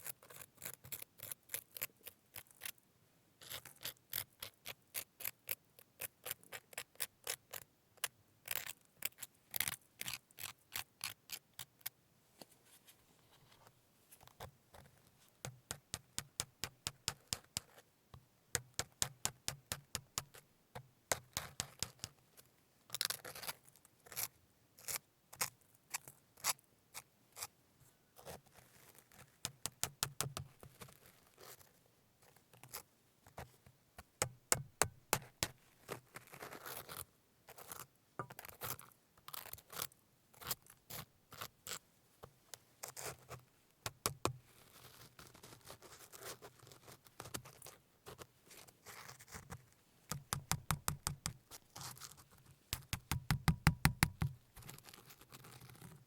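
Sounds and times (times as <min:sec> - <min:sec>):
sharp taps and clicks: 0:50.1 - 0:51.4, 0:52.7 - 0:54.4.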